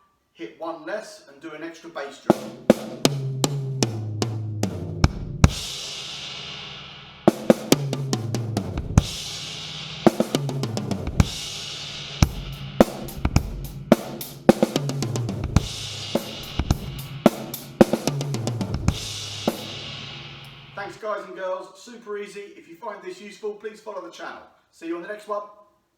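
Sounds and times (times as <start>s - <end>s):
tom drum fill: 2.3s - 20.9s
bass drum kick: 3.0s - 5.8s, 7.3s - 20.8s
cymbal crash: 9.0s - 20.8s.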